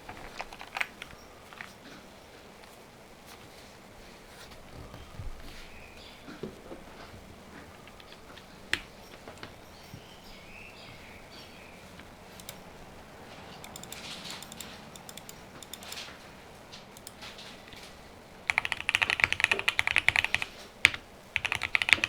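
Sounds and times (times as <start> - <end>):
mechanical keyboard keystrokes: 0.0 - 1.7, 12.2 - 22.0.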